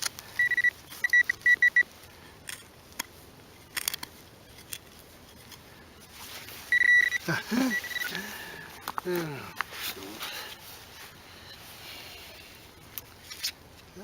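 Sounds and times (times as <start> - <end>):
metal detector beeping: 0.4 - 1.9, 6.7 - 8.3.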